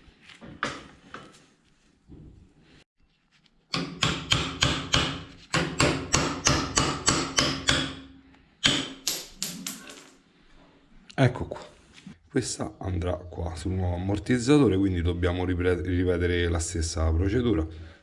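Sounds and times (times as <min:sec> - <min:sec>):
hammer striking metal: 0:03.7 - 0:10.0.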